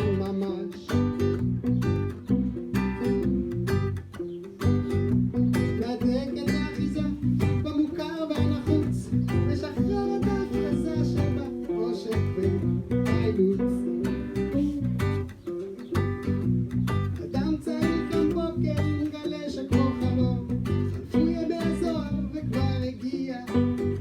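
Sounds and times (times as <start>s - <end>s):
person singing: 0.0s - 1.4s, 5.6s - 15.2s, 17.1s - 24.0s
strummed acoustic guitar: 0.0s - 24.0s.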